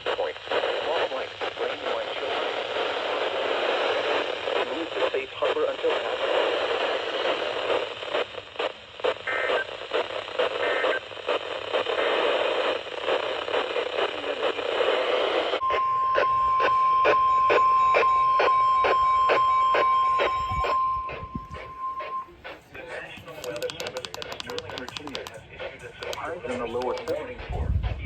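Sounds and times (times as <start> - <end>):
radio static hiss: 0.0 - 28.0
single-tone warning alarm: 15.6 - 25.3
regular clicking: 23.2 - 27.2.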